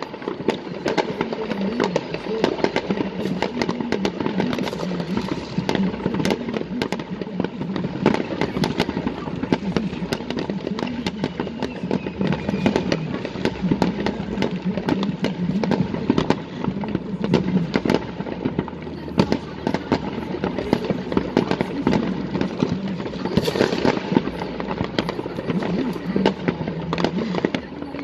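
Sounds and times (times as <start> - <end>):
fireworks cracking and banging: 0.0 - 28.0.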